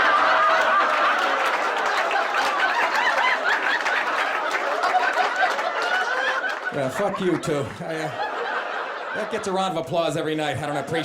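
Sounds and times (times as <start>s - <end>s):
audience clapping: 0.0s - 7.8s
audience laughing: 0.0s - 11.0s.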